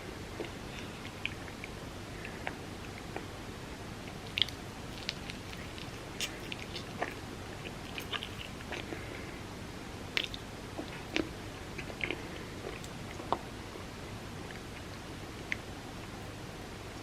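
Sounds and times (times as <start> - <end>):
person chewing dessert: 0.3 - 3.3, 4.0 - 9.4, 10.1 - 13.5
wet mouth clicks: 4.1 - 8.9, 10.2 - 12.2.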